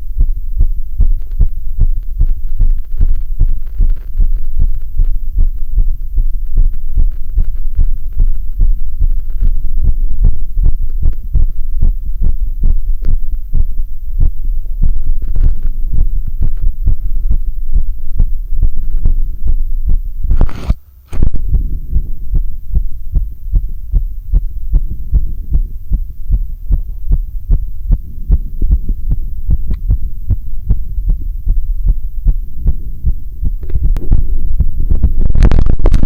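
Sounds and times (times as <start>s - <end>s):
heartbeat through stethoscope: 0.0s - 36.0s
rubbing noise: 14.8s - 22.4s.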